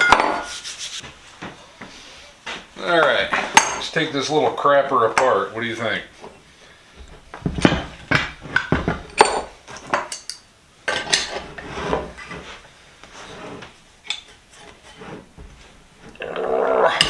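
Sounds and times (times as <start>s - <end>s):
metal tools clanking: 3.3s - 5.4s, 7.0s - 12.4s.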